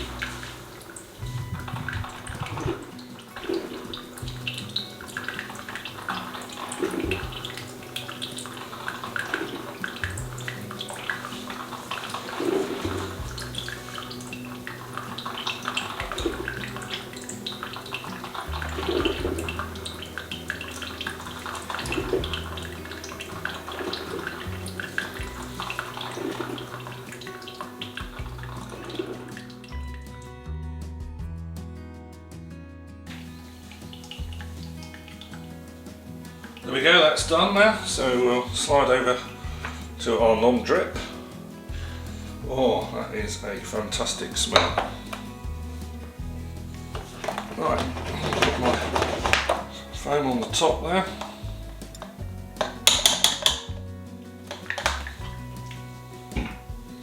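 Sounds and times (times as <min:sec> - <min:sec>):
coffee streaming onto ice: 0:00.0 - 0:29.6, 0:46.9 - 0:53.7, 0:54.4 - 0:55.8
coffee maker gurgling: 0:00.0 - 0:29.9, 0:33.1 - 0:53.8, 0:54.5 - 0:57.0.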